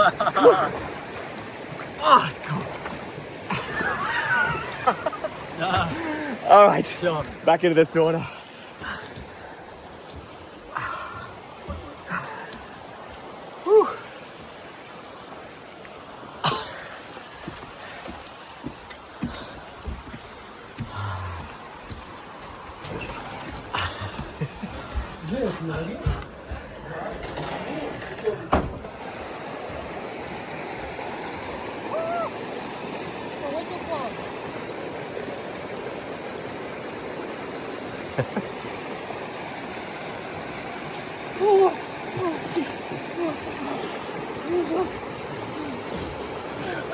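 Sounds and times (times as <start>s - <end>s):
running water: 0.0s - 46.9s
person coughing: 16.4s - 16.9s.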